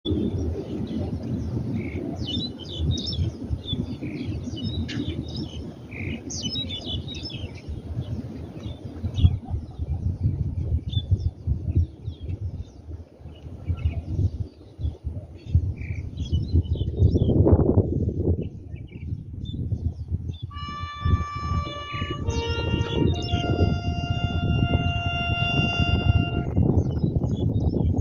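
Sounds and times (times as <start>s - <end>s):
small birds chirping: 0.1s - 17.4s.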